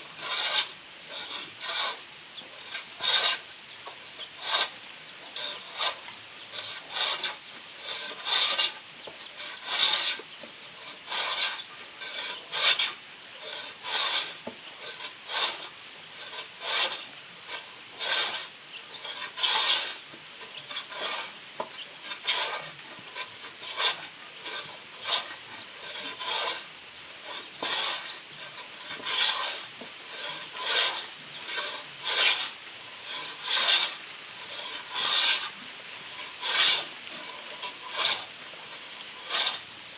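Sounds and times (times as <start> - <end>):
hand plane scraping wood: 0.0 - 39.9.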